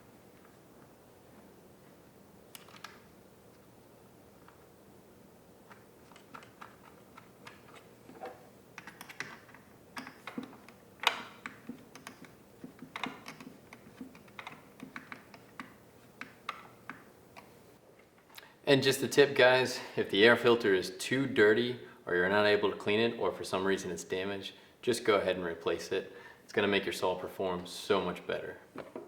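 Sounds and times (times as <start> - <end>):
plastic parts clicking together: 2.5 - 3.0, 5.7 - 17.5.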